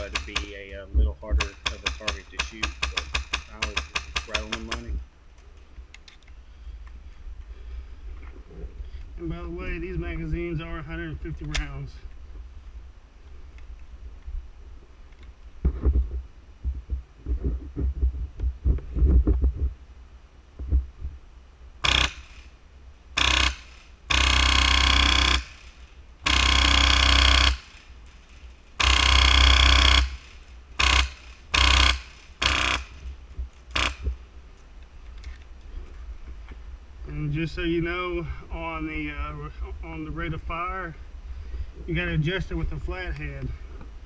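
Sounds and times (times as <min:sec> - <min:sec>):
low knocks and thumps: 0:15.6 - 0:19.9, 0:20.5 - 0:21.2
airsoft rifle firing full-auto: 0:21.8 - 0:22.5, 0:23.2 - 0:27.8, 0:28.8 - 0:32.9.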